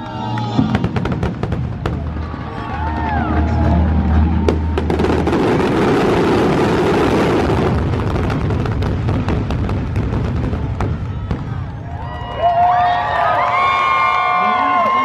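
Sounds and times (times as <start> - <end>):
fireworks booms and bursts: 0.6 - 2.9, 4.2 - 12.2.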